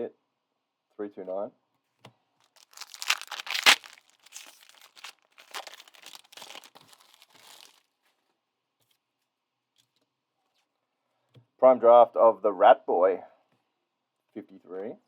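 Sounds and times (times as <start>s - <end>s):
wrapper crinkling and tearing: 2.5s - 7.8s.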